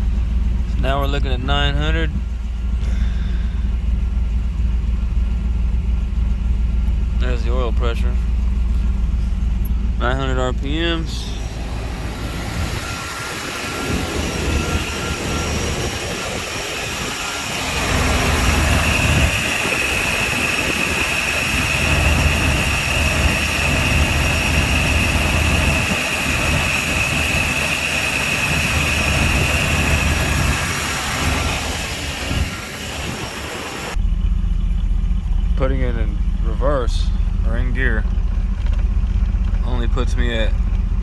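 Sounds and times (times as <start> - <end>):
engine idling: 0.0 - 41.0
high-pitched whine: 7.2 - 38.8.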